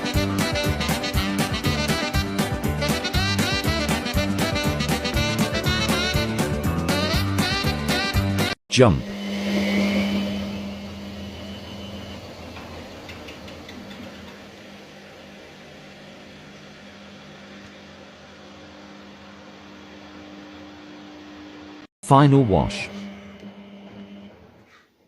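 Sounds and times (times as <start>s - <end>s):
high whine: 8.7s - 13.2s, 22.0s - 24.6s
washing machine motor hum: 9.1s - 24.7s.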